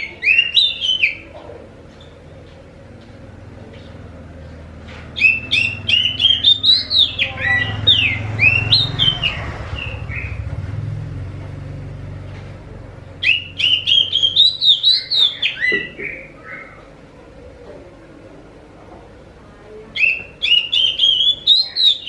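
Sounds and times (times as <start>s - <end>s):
bird singing whistled notes: 5.2s - 10.4s, 13.2s - 16.8s, 20.0s - 22.0s.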